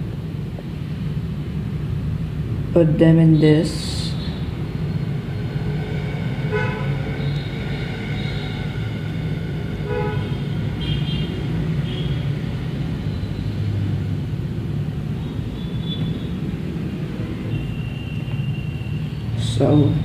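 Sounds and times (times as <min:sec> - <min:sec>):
road traffic rumble: 0:00.0 - 0:20.0
vehicle horn honking: 0:06.5 - 0:08.6, 0:09.8 - 0:12.2.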